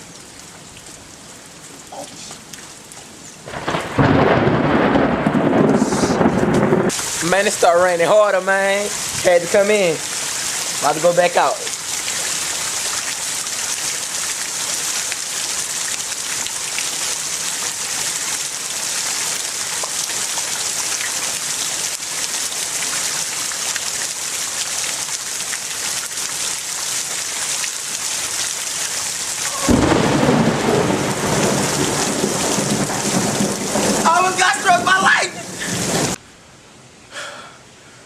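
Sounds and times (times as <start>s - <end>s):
heavy rain: 0.0s - 36.2s
thunder rumble: 3.5s - 8.0s, 29.5s - 36.2s.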